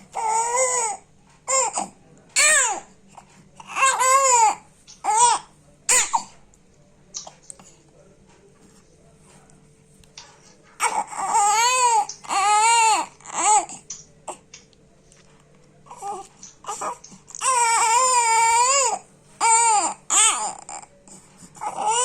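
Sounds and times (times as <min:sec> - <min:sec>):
infant crying: 0:00.2 - 0:02.8, 0:03.6 - 0:05.4, 0:10.8 - 0:13.8, 0:15.9 - 0:20.9, 0:21.6 - 0:22.0.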